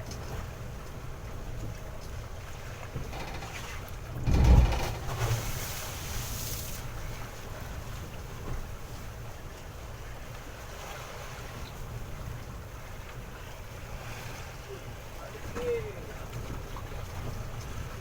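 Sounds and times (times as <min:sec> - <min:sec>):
wind buffeting microphone: 0:02.9 - 0:07.6
low rumble: 0:03.1 - 0:05.6.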